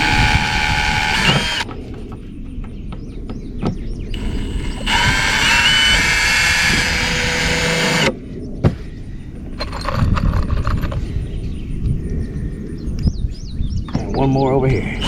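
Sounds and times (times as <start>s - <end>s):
cordless drill driving screw: 0.0s - 1.7s, 4.2s - 8.2s.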